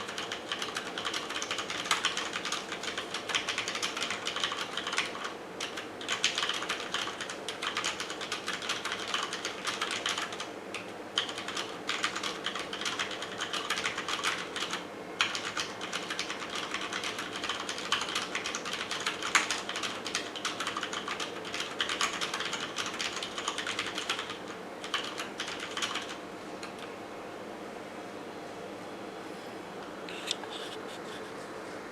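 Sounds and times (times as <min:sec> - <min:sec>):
mechanical keyboard typing: 0:00.0 - 0:26.8.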